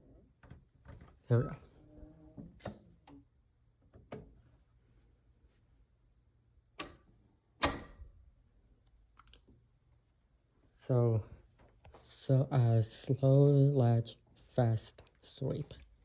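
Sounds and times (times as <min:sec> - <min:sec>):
door closer clicks and knocks: 0:07.6 - 0:08.0.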